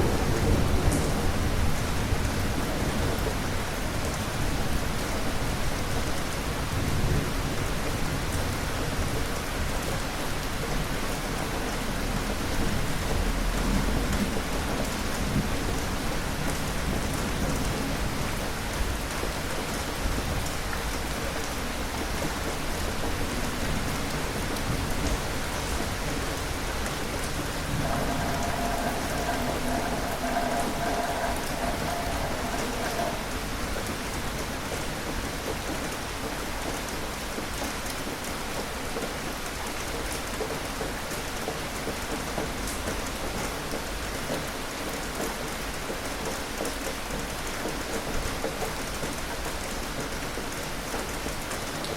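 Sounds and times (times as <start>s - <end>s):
steady rain falling: 0.0s - 51.9s
steady pitched tone: 27.7s - 33.8s
low rumbles: 27.7s - 33.9s.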